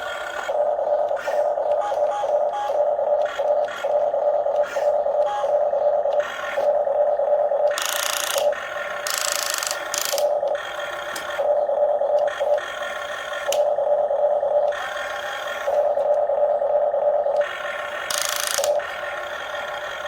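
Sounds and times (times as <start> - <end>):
steady motor hum: 0.0 - 20.0
toy gear motors whirring: 0.0 - 20.0.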